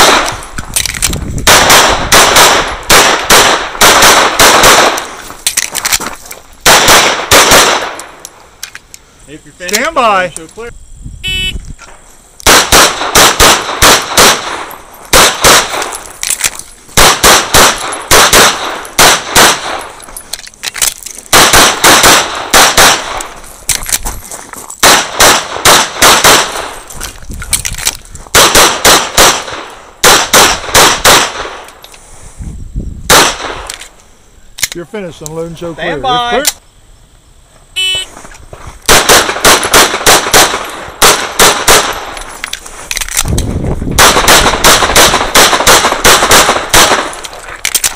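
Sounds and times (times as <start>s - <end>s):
pistol shots: 0.0s - 5.2s, 6.6s - 8.2s, 12.4s - 16.4s, 17.0s - 20.0s, 21.3s - 23.4s, 24.8s - 26.8s, 28.3s - 31.6s, 33.1s - 33.8s, 38.9s - 42.2s, 44.0s - 47.9s.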